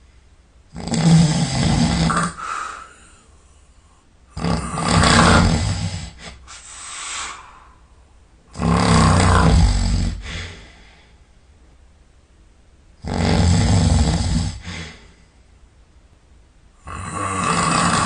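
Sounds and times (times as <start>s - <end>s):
person snoring heavily: 0.7s - 3.2s, 4.4s - 7.6s, 8.5s - 10.9s, 13.0s - 15.2s, 16.8s - 18.0s.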